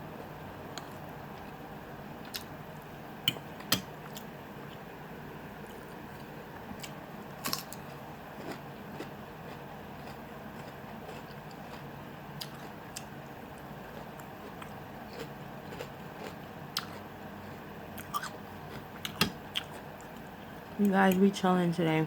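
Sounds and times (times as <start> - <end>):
low background hum: 0.0 - 22.0
eating clicks and crunches: 2.2 - 2.6, 5.6 - 21.0.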